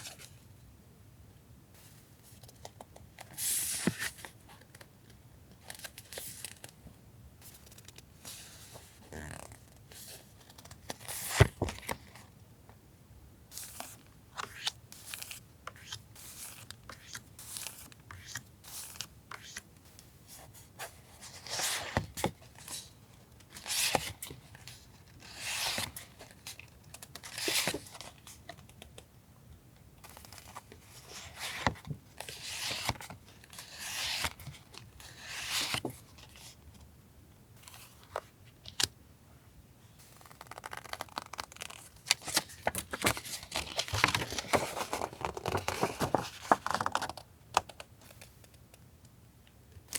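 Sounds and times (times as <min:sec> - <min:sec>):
plastic sleeves crinkling: 0:40.2 - 0:47.2.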